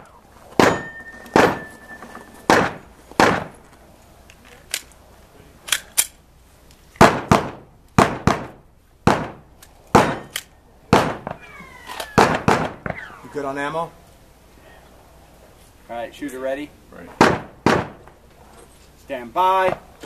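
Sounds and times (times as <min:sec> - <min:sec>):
thin steady ringing tone: 0:00.0 - 0:03.0
pistol shots: 0:00.5 - 0:03.6, 0:07.0 - 0:13.3, 0:17.2 - 0:18.0.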